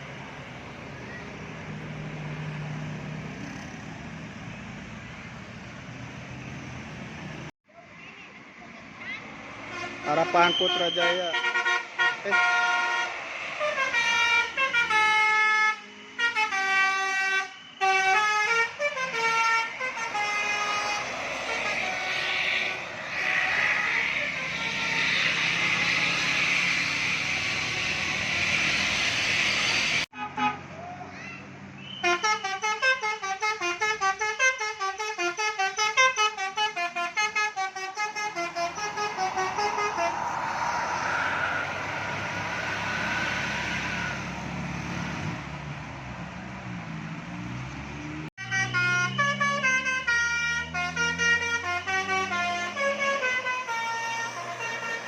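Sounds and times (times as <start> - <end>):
passing vehicle engines and tyres: 0.0 - 55.0
bus melodic horn: 9.6 - 22.2, 24.2 - 25.8, 30.1 - 30.8, 32.0 - 40.3, 48.4 - 55.0.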